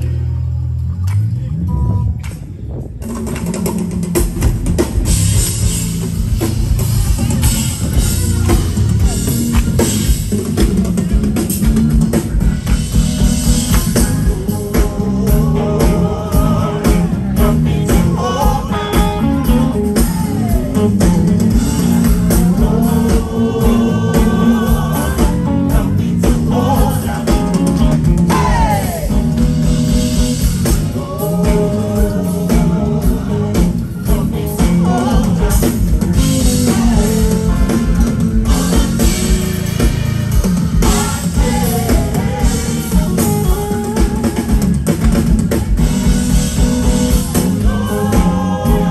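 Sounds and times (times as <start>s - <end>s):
live band playing: 0.0s - 48.9s
person singing: 13.8s - 29.6s, 30.8s - 39.6s, 46.8s - 48.9s.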